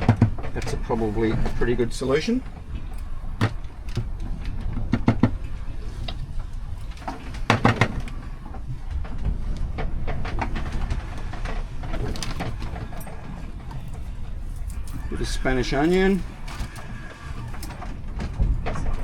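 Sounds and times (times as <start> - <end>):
food preparation knocks and clicks: 0.0 - 0.6, 3.4 - 5.4, 7.1 - 8.1
steady low rumble: 0.0 - 19.0.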